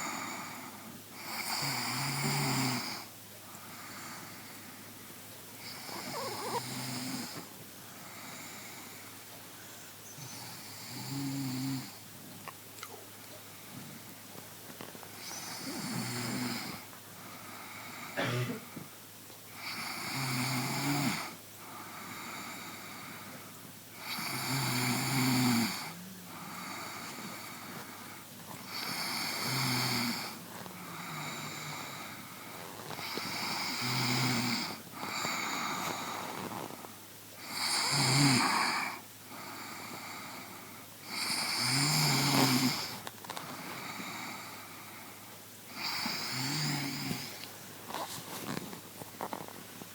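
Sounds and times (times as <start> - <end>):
person snoring: 5.6 - 7.4, 10.4 - 12.0, 24.0 - 36.8, 37.4 - 43.0, 45.7 - 47.4.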